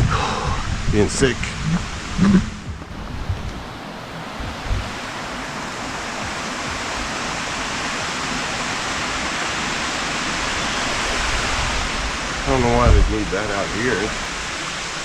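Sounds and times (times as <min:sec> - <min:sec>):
rushing water hiss: 0:00.0 - 0:15.0
low thump: 0:01.7 - 0:03.6.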